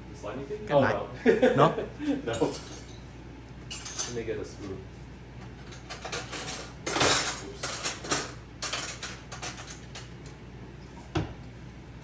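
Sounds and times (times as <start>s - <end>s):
cutlery and dishes clinking: 2.3s - 3.0s, 3.7s - 4.2s, 5.6s - 10.1s.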